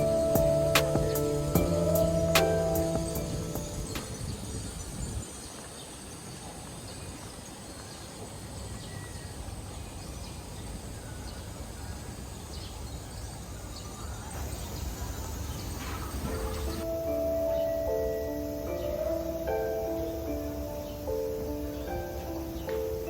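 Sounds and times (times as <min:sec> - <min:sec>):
background music: 0:00.0 - 0:04.5, 0:16.2 - 0:23.0
steady low hum: 0:00.0 - 0:05.2
faint high chirps: 0:00.0 - 0:05.3.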